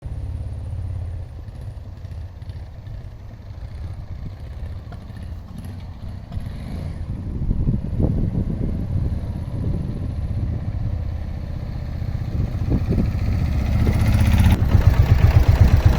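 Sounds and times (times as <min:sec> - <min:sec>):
motorcycle engine pulsing idle: 0:11.5 - 0:15.9.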